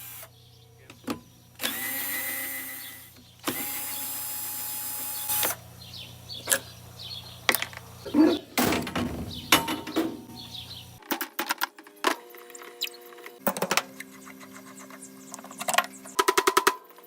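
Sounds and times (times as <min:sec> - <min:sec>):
power drill driving screws: 0:01.6 - 0:05.6.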